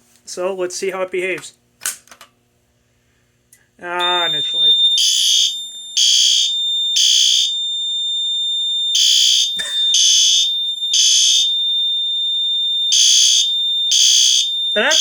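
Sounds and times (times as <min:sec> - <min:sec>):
loud high piezo beep: 0:04.0 - 0:07.5
fire alarm horn blasts: 0:04.0 - 0:15.0.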